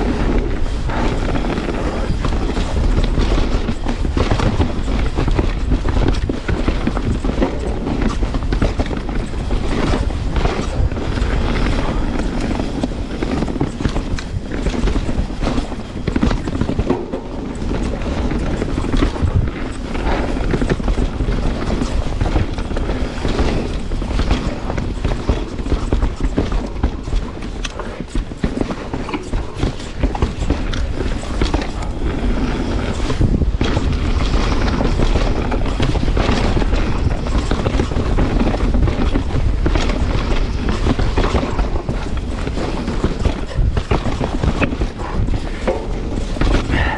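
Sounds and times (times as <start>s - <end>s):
bike rattling and knocking: 0.0s - 46.9s
tyres rumbling on dirt: 0.0s - 46.9s.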